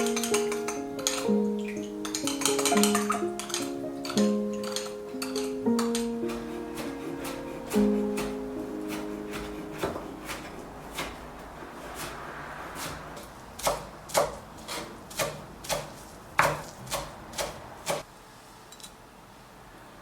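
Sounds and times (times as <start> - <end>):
knife chopping on cutting board: 5.8 - 18.1.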